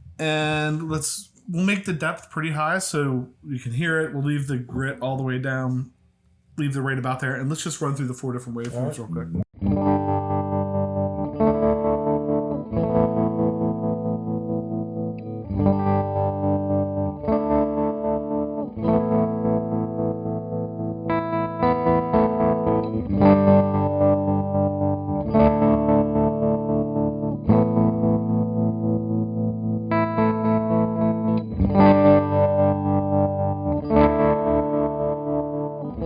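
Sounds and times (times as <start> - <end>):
electric guitar chords with tremolo: 9.6 - 36.0.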